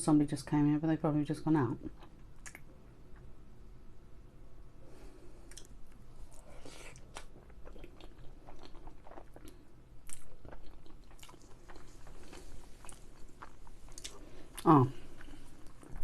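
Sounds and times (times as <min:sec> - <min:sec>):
wet mouth clicks: 0:02.4 - 0:02.7, 0:05.5 - 0:05.7
food crunching: 0:05.4 - 0:16.0
person chewing food: 0:05.4 - 0:16.0.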